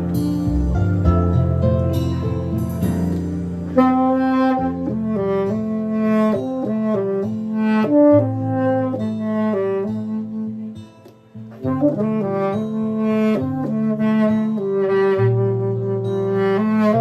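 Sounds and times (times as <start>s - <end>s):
sustained bass line: 0.0s - 10.8s
saxophone-like lead melody: 0.0s - 17.0s.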